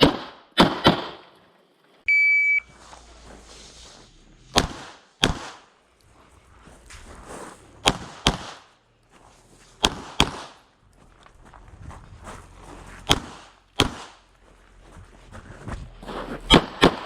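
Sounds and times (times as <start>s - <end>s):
pistol shots: 0.0s - 1.4s, 4.5s - 5.8s, 7.8s - 8.8s, 9.8s - 10.7s, 13.0s - 14.3s, 16.4s - 17.0s.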